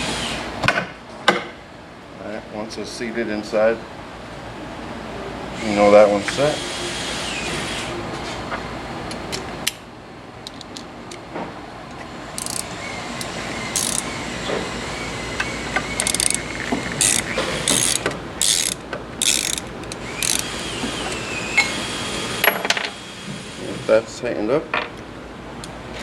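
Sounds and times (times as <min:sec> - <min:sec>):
ratchet wrench clicking: 0:12.3 - 0:14.2, 0:15.8 - 0:20.8.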